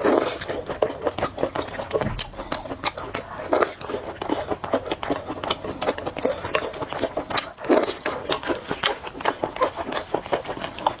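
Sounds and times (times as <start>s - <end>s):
chewing noodles with wet smacks: 5.1s - 11.0s.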